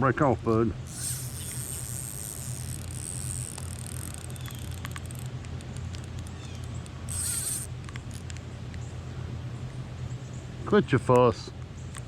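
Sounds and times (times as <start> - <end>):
steady low hum: 0.6 - 10.6
faint clicks: 0.9 - 8.8.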